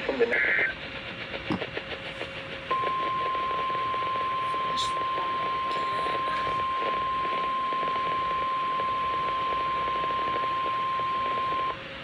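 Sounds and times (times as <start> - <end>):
steady high-pitched alarm beep: 2.7 - 11.8.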